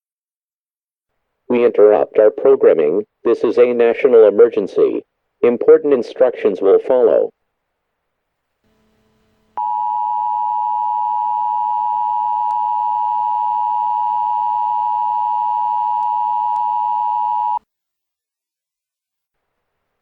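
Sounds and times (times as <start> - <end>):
steady two-tone alert beep: 9.6 - 17.6.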